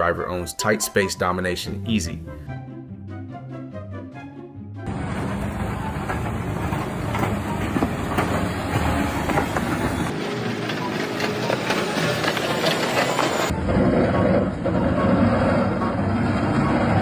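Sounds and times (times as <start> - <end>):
heavy machinery clattering: 4.9 - 17.0.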